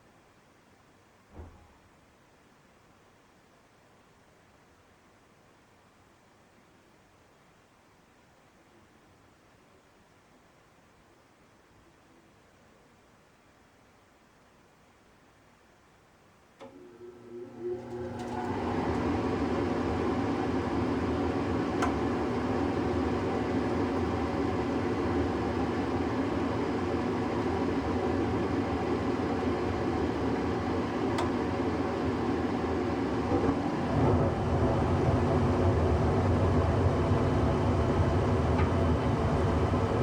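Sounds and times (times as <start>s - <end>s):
furnace inducer motor humming: 16.6s - 40.0s.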